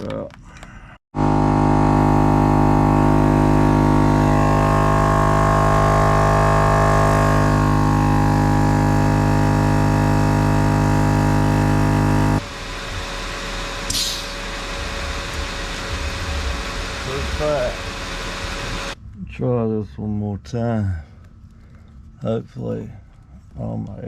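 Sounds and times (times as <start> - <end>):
air compressor buzzing drone: 1.1 - 19.0.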